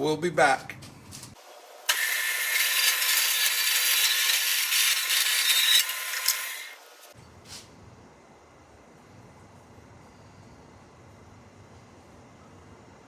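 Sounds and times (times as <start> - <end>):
bandsaw cutting metal: 1.9 - 7.2.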